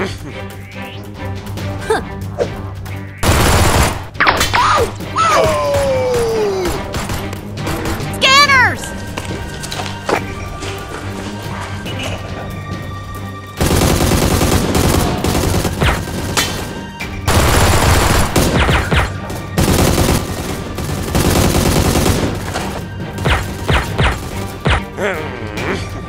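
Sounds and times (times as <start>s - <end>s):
background music: 0.0s - 26.0s
automatic gunfire bursts: 3.2s - 4.1s, 13.6s - 16.3s, 17.3s - 22.6s.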